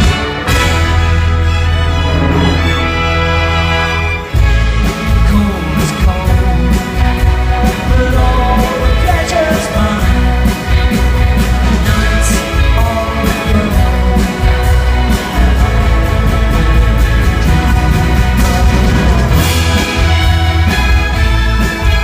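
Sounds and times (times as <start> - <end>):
pop-rock band with orchestra: 0.0 - 22.0
person singing: 4.9 - 19.7.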